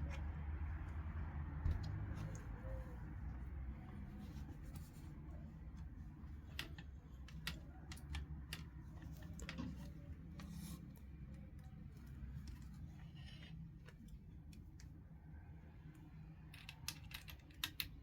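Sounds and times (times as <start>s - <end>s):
low steady hum: 0.0s - 18.0s
light clicks and taps of tools: 1.6s - 15.0s, 15.9s - 18.0s.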